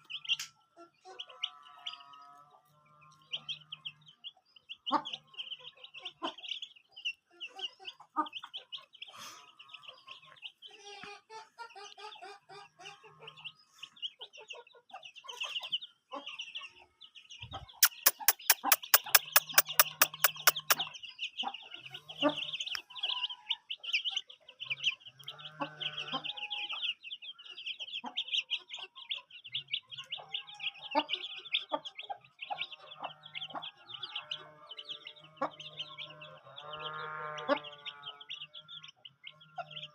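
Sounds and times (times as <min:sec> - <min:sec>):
chickens clucking: 0:00.0 - 0:39.9
high chirping chorus: 0:17.2 - 0:21.4
sharp clicks: 0:17.8 - 0:20.8.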